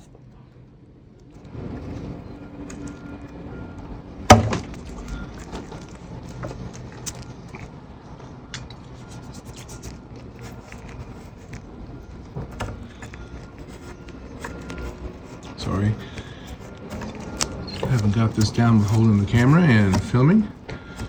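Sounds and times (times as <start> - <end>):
sharp knock: 4.3 - 4.7
gloved hands pressing putty: 8.6 - 21.0.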